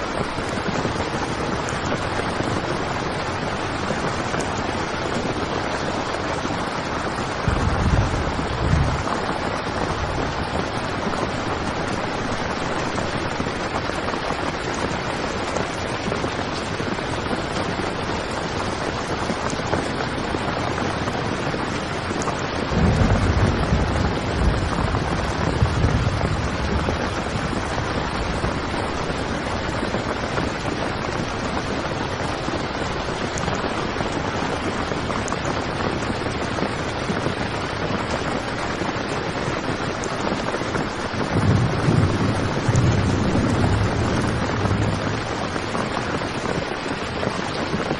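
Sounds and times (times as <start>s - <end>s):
heavy rain on a tent: 0.0s - 47.9s
low rumble: 41.6s - 46.0s.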